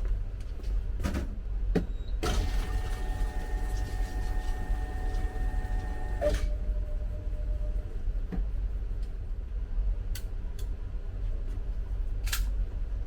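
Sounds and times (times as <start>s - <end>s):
constant low rumble: 0.0s - 2.0s, 5.1s - 13.0s
motor starting clunk: 2.2s - 6.7s
electric motor whining: 2.5s - 6.5s.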